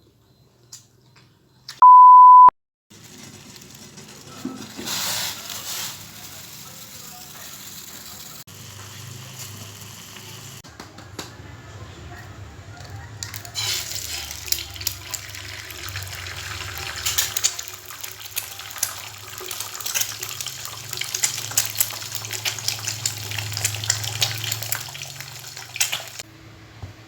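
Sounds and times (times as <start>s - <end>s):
running water splashing: 13.6s - 26.2s.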